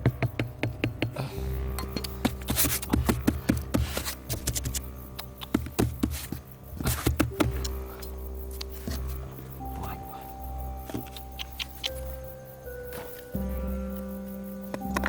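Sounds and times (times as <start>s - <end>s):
wooden sticks tapping and knocking: 0.0s - 9.0s
scraping of wooden sticks: 1.8s - 10.2s.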